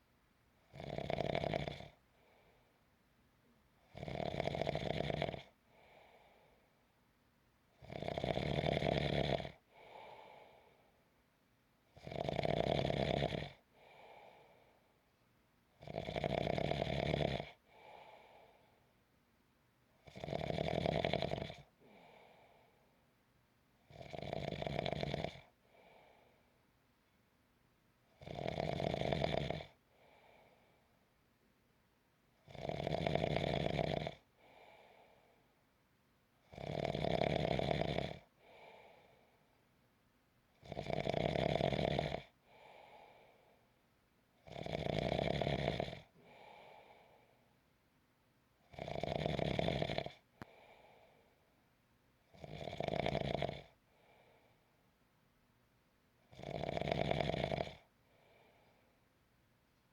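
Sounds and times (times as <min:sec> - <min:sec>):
person snoring: 0:00.7 - 0:02.0, 0:04.0 - 0:05.5, 0:07.8 - 0:09.6, 0:12.0 - 0:13.6, 0:20.1 - 0:22.1, 0:23.9 - 0:25.5, 0:32.5 - 0:34.2, 0:36.5 - 0:38.3, 0:40.6 - 0:42.3, 0:44.5 - 0:46.6, 0:48.7 - 0:50.2, 0:52.4 - 0:53.7, 0:56.4 - 0:57.9.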